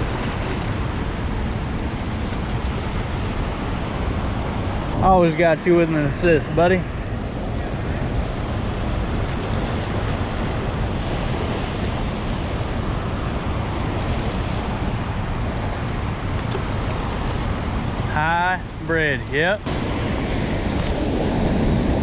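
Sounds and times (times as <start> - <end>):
water roaring through dam: 7.4 - 22.0.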